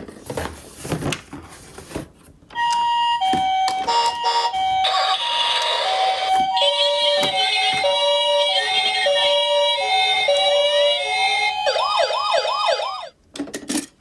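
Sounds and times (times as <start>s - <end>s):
toy siren two-tone hi-lo: 2.6s - 13.1s.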